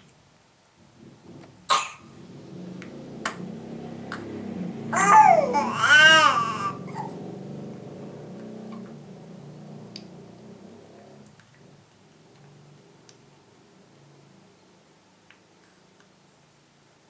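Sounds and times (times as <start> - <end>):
child coughing: 1.7 - 2.0, 5.0 - 7.2
child wailing: 5.0 - 7.2.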